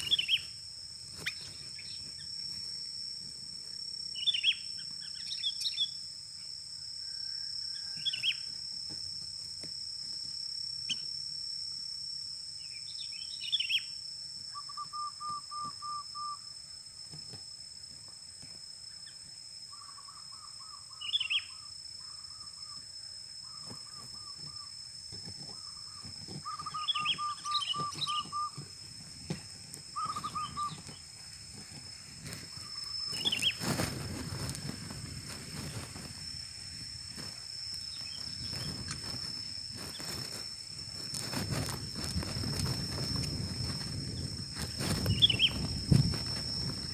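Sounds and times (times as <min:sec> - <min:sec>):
bulbul calling: 0:00.0 - 0:00.5, 0:04.2 - 0:06.0, 0:19.7 - 0:22.8, 0:25.5 - 0:28.7, 0:29.9 - 0:31.0, 0:32.5 - 0:33.6, 0:45.1 - 0:45.7
high-pitched drone: 0:00.0 - 0:07.0, 0:07.6 - 0:46.9
rustling: 0:28.0 - 0:46.9.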